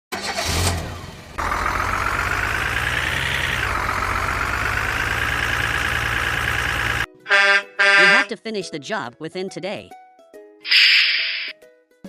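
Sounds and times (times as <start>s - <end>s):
truck engine running: 0.2s - 8.3s.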